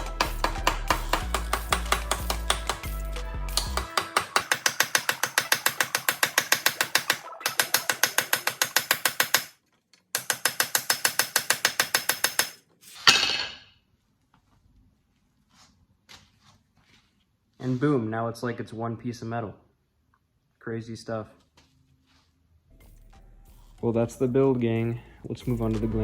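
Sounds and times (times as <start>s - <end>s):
small hammer peening metal: 0.0s - 13.6s.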